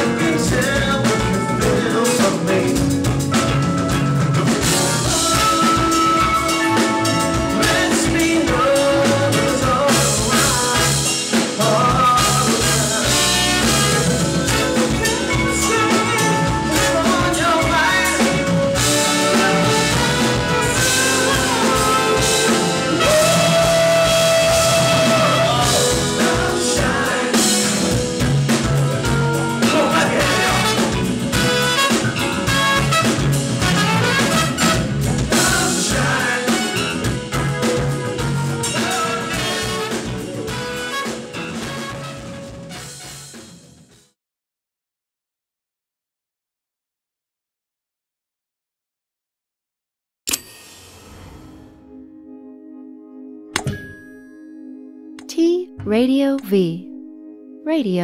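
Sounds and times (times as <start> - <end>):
lead singer singing: 0.0 - 3.0, 4.6 - 28.2, 29.6 - 31.2, 35.3 - 37.3, 38.6 - 40.2
band playing song: 0.0 - 43.9, 55.2 - 56.9.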